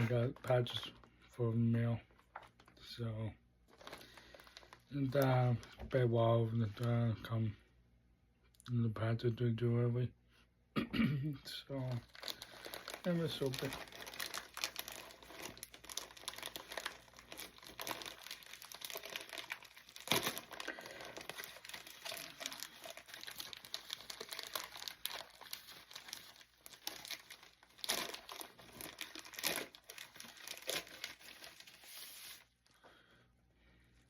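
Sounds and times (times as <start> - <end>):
packaging crinkling and tearing: 0.0 - 1.1, 2.1 - 2.8, 3.7 - 5.8, 11.8 - 32.7.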